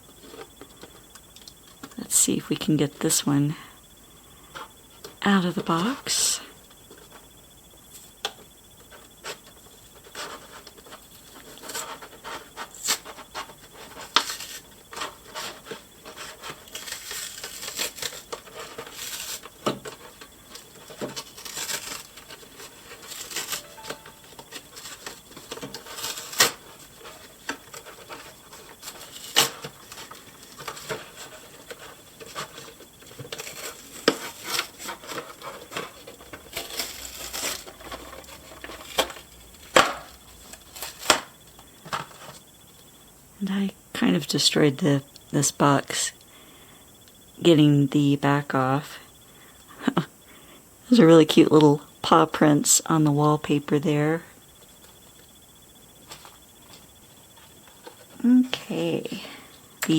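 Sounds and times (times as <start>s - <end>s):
cardboard rubbing and scraping: 9.0s - 41.3s.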